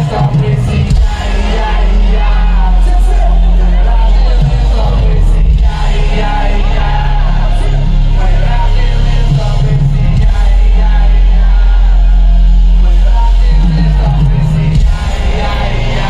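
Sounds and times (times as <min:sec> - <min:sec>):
booming bass beat: 0:00.0 - 0:16.0
rapped or shouted vocals: 0:00.0 - 0:16.0.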